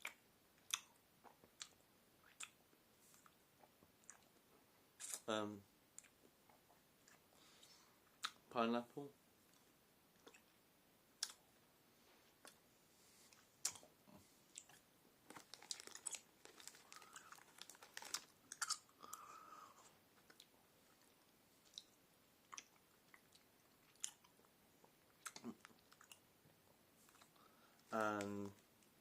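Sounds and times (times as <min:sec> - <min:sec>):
wet mouth clicks: 0:01.6 - 0:02.6
chewing gummy candy: 0:14.5 - 0:24.5, 0:25.1 - 0:26.2.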